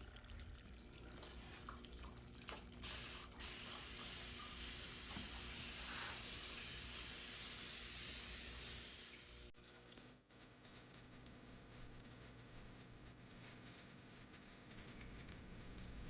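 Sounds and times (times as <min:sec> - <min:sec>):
soft water drips: 0:00.0 - 0:08.0
water trickling: 0:00.0 - 0:09.5.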